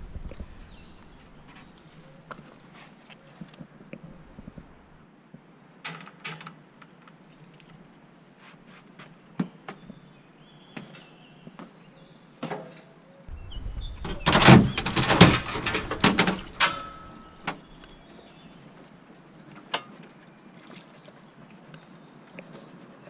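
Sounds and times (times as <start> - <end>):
deep rumble: 0.0 - 1.5, 13.3 - 17.4
loud scraping and rustling: 13.3 - 18.0.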